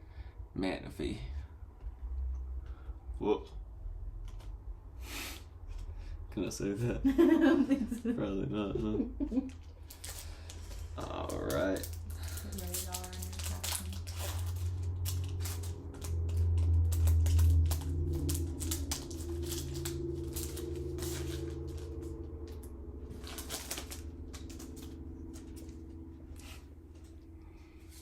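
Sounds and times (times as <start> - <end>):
low steady hum: 0.0 - 28.0
foil wrapper crinkling and tearing: 9.8 - 26.6.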